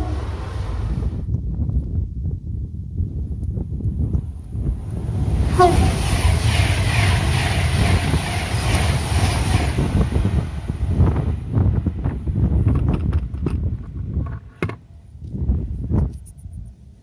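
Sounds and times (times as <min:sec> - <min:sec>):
train passing at speed: 0:00.0 - 0:01.3, 0:04.0 - 0:12.6
wind on microphone: 0:00.0 - 0:17.0.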